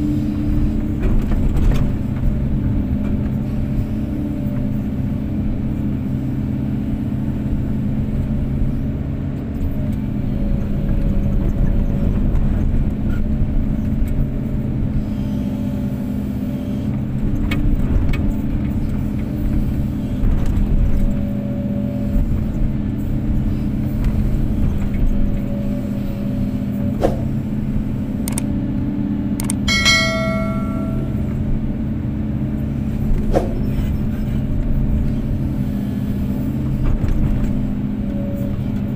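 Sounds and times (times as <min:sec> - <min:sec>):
excavator diesel engine running: 0:00.0 - 0:38.9
sharp knocks: 0:29.7 - 0:31.2
brief metallic ring: 0:29.7 - 0:31.4.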